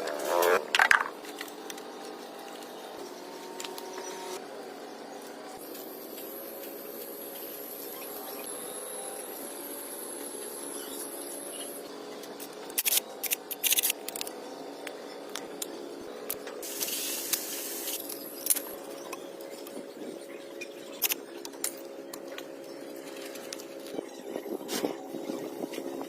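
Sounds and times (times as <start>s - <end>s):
hissing spray bursts: 16.6s - 18.1s.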